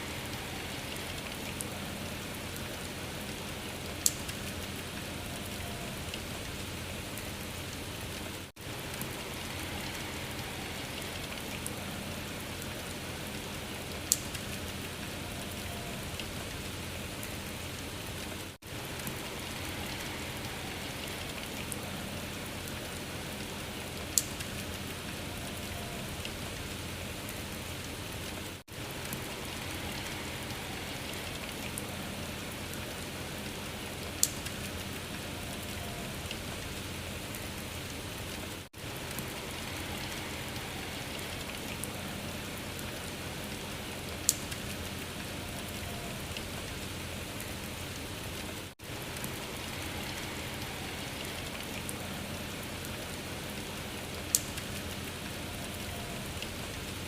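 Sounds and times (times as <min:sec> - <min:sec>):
rain falling on a surface: 0:00.0 - 0:57.0.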